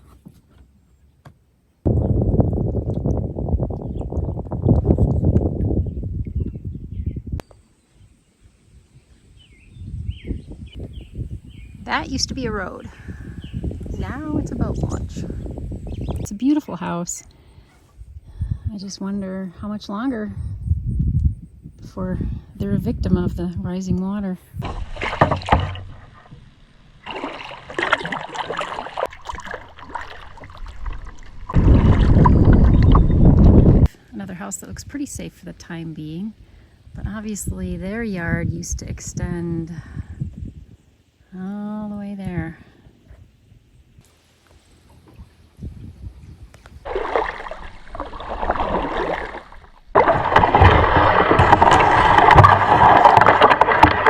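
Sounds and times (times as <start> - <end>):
wind buffeting microphone: 1.8 - 7.4, 8.0 - 41.0, 41.8 - 44.1, 44.9 - 54.0
paddle strokes splashing water: 24.6 - 33.2, 46.8 - 54.0.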